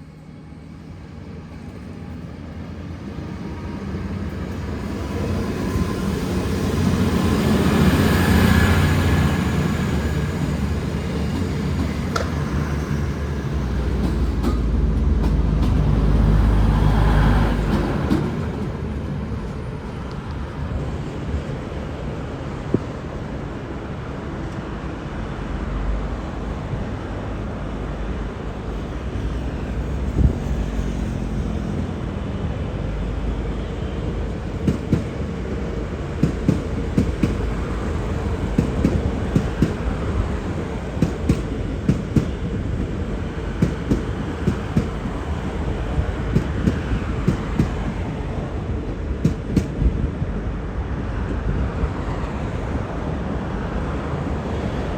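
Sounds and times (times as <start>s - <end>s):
train rumbling past: 0.0s - 54.9s
wheels clacking over rail joints: 6.8s - 16.1s, 34.1s - 48.2s.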